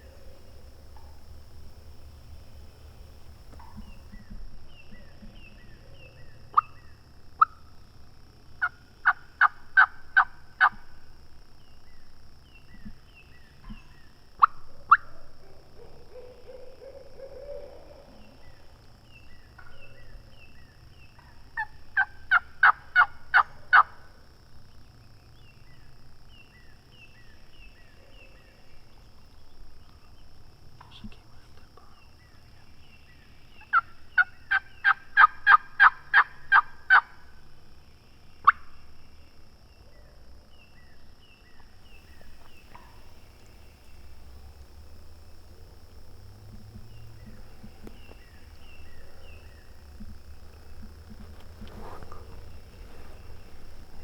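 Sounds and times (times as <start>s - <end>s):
wild turkey calling: 0.0s - 4.2s, 8.6s - 10.8s, 33.7s - 37.0s, 41.9s - 54.0s
small birds chirping: 0.0s - 7.0s, 41.9s - 54.0s.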